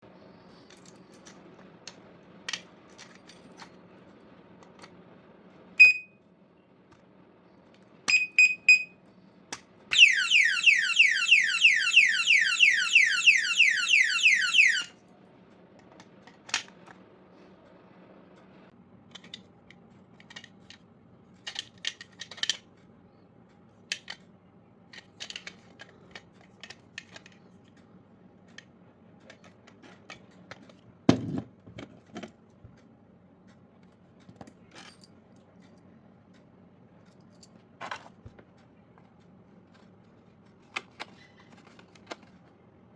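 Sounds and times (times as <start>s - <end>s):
alarm siren wailing: 9.9s - 14.9s.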